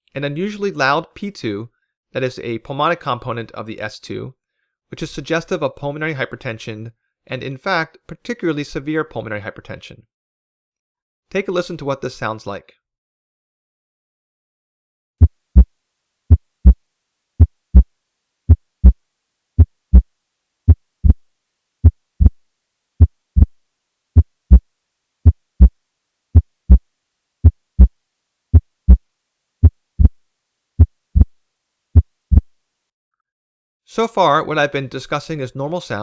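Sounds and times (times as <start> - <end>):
heartbeat low thuds: 15.2 - 15.7, 16.3 - 16.8, 17.4 - 17.9, 18.5 - 19.0, 19.6 - 20.1, 20.7 - 21.2, 21.8 - 22.4, 23.0 - 23.6, 24.2 - 24.6, 25.2 - 25.7, 26.4 - 26.8, 27.4 - 27.9, 28.5 - 29.0, 29.6 - 30.2, 30.8 - 31.4, 32.0 - 32.6.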